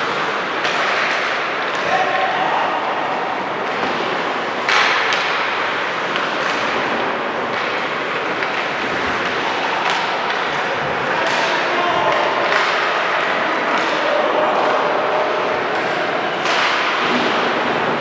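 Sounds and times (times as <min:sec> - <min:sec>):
hubbub in a large hall: 0:00.0 - 0:18.0.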